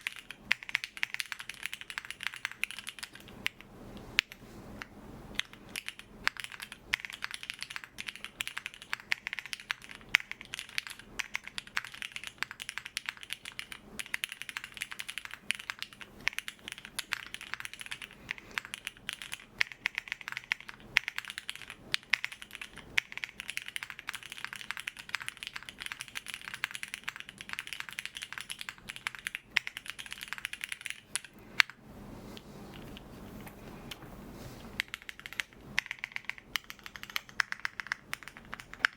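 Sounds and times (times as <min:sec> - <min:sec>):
fast typing on mechanical keyboard: 0:00.0 - 0:04.4, 0:05.4 - 0:31.8, 0:34.8 - 0:38.9.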